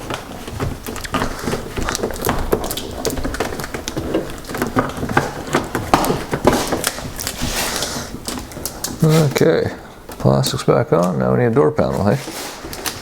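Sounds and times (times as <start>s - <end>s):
sharp crackles and taps: 0.0s - 7.4s, 8.2s - 9.0s
plastic sheet crinkling: 0.0s - 13.0s.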